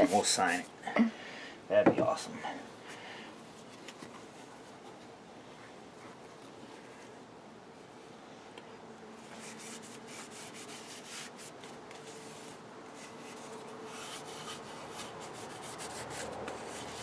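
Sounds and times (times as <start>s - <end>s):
paper towel wiping wood: 0.0s - 0.6s, 9.3s - 17.0s.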